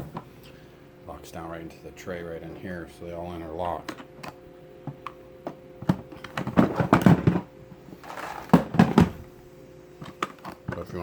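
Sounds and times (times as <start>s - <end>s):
plastic boxes clicking and knocking: 5.8s - 7.5s, 8.1s - 9.2s.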